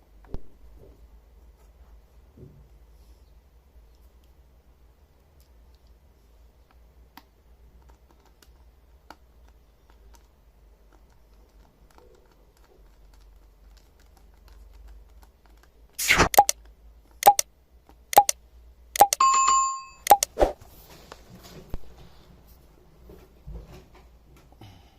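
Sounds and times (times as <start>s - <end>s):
short electronic beep: 19.0s - 20.3s.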